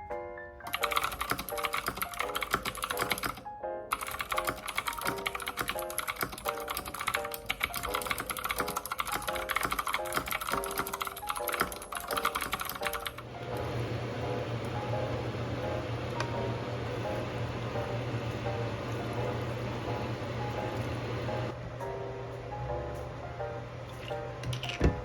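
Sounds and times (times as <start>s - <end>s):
background music: 0.0s - 25.0s
mechanical keyboard typing: 0.6s - 13.2s.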